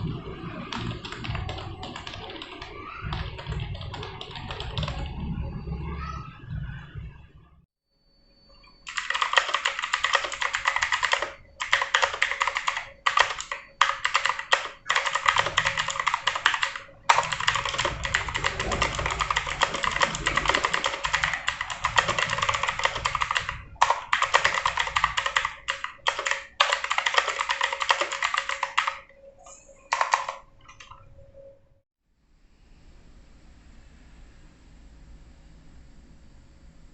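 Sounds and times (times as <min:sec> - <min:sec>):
fast typing on computer keyboard: 0:00.2 - 0:05.2, 0:08.9 - 0:31.0.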